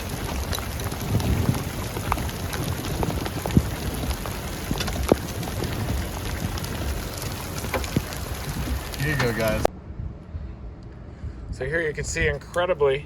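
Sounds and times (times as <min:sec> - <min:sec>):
heavy rain on vehicle: 0:00.0 - 0:09.7.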